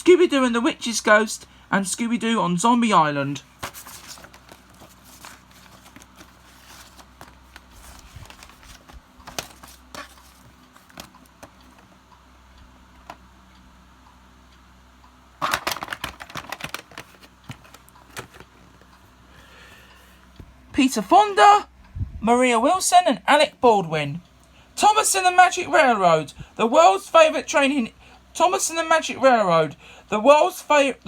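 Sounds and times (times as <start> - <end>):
faint steady hum: 0.0 - 31.0
paper rustling and crinkling: 3.4 - 11.9, 15.4 - 19.0.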